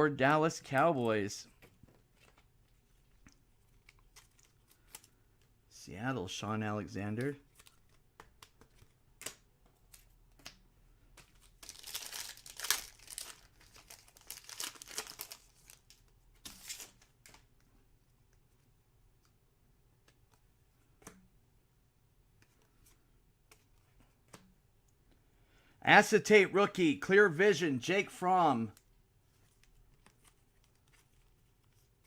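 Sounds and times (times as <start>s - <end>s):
wrapper crinkling and tearing: 11.5s - 17.0s.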